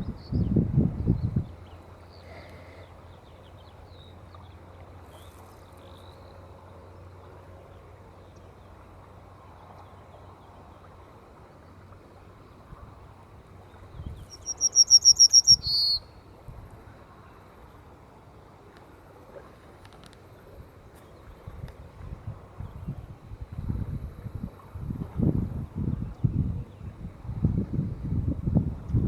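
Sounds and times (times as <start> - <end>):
songbird singing: 0.0 - 6.8, 13.6 - 16.4.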